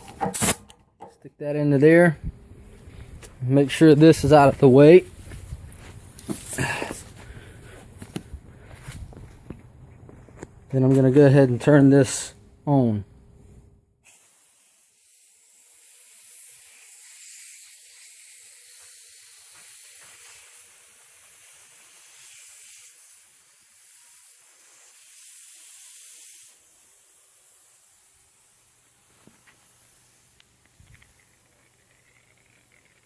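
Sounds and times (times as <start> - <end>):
compressed air hissing through hose: 2.7 - 7.8, 14.0 - 33.0.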